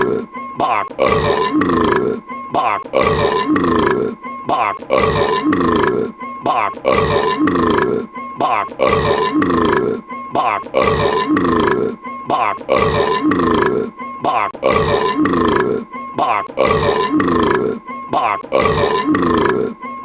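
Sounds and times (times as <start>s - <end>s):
cartoon gurgling burps: 0.0s - 19.9s.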